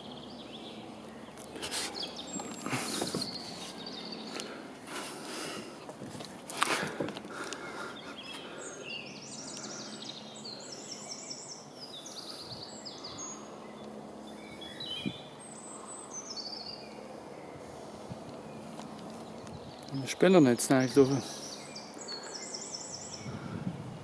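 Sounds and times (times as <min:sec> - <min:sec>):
songbirds trilling and chirping: 0:00.0 - 0:24.0
background rustle: 0:01.4 - 0:07.7.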